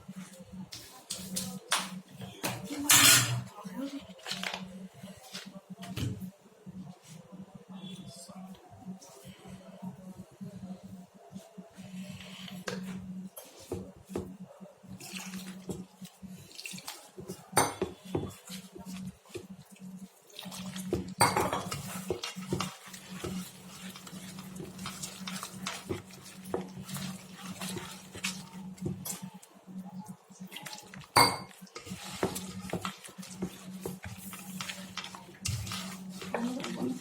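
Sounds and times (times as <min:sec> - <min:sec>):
utensils and dishes clattering: 0:01.8 - 0:03.5.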